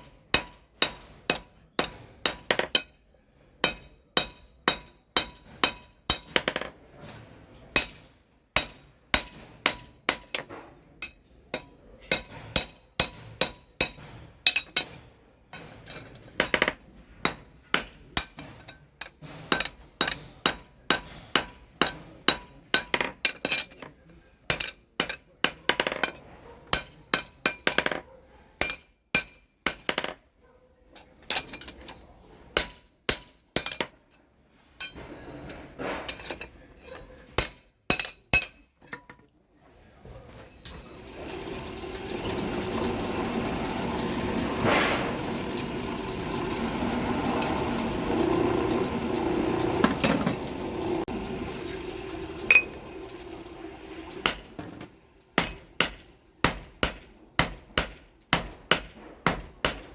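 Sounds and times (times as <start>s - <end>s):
hammer striking steel on anvil: 0.0s - 3.0s, 3.6s - 6.6s, 7.8s - 15.0s, 15.6s - 23.8s, 24.5s - 27.9s, 28.6s - 30.0s, 32.6s - 33.9s, 44.0s - 45.4s, 54.2s - 54.8s, 55.4s - 59.9s.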